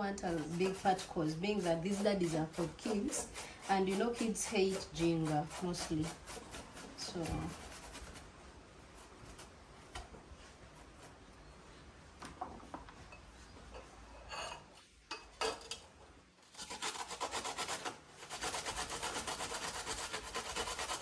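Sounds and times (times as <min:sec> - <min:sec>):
ginger rasping on grater: 0:00.0 - 0:08.2, 0:16.5 - 0:21.0.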